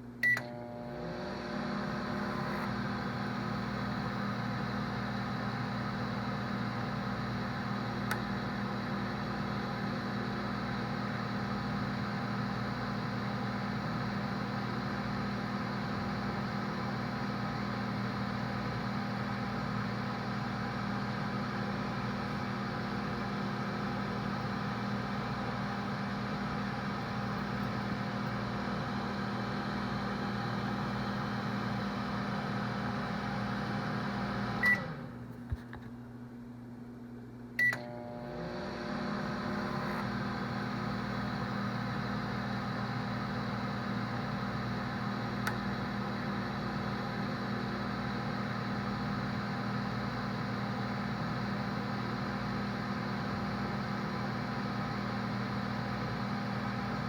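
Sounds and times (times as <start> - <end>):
microwave oven humming: 0.0 - 57.0
microwave click: 0.2 - 0.7, 8.0 - 8.6, 37.6 - 38.0, 45.3 - 45.9
microwave beep: 0.2 - 1.0, 34.1 - 35.1, 37.6 - 38.2.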